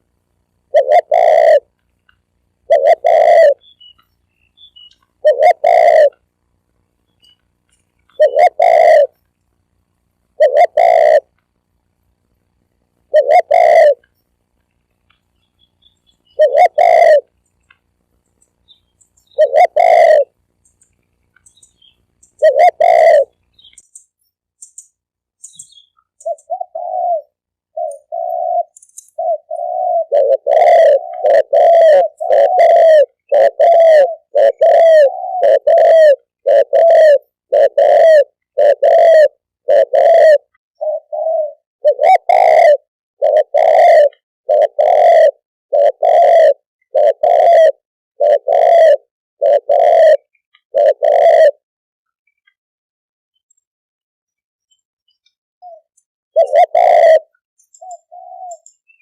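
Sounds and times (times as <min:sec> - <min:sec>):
dove cooing: 0:00.0 - 0:01.8, 0:02.5 - 0:06.3, 0:08.0 - 0:09.2, 0:10.3 - 0:11.4, 0:13.0 - 0:14.2, 0:15.9 - 0:17.4, 0:18.7 - 0:23.8, 0:25.5 - 0:51.6, 0:55.6 - 0:59.0.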